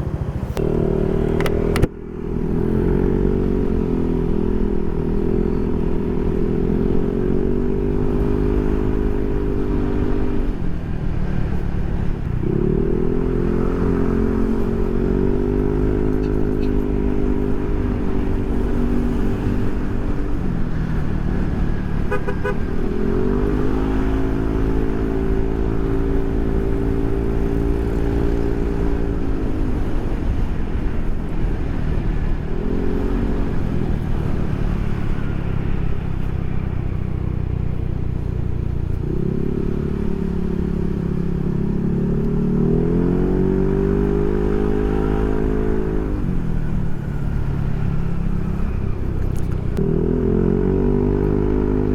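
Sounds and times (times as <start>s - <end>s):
scooter engine revving: 0.0s - 36.1s.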